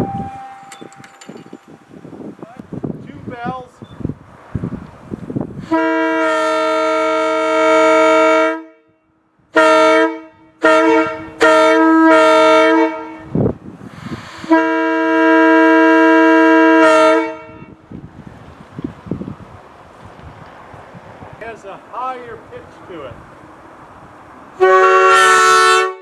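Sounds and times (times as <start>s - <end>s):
locomotive air horn blasts: 5.6s - 13.4s, 14.0s - 17.8s, 24.6s - 26.0s.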